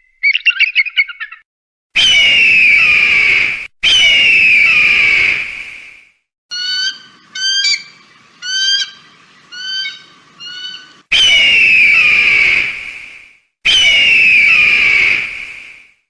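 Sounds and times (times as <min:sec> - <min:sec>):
eagle long harsh scream: 0:02.0 - 0:05.6, 0:06.5 - 0:12.8, 0:13.7 - 0:15.5.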